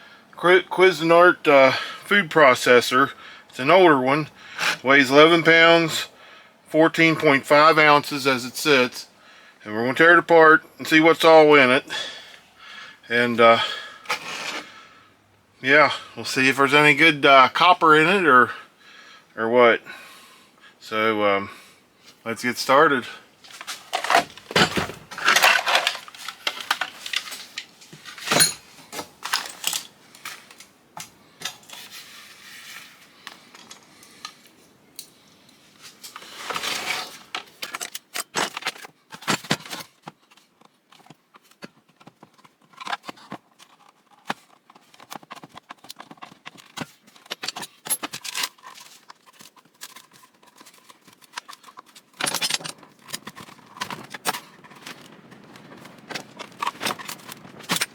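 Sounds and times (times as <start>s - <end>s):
hand tools clattering on parts: 23.5s - 30.6s, 46.7s - 49.0s, 51.3s - 57.9s.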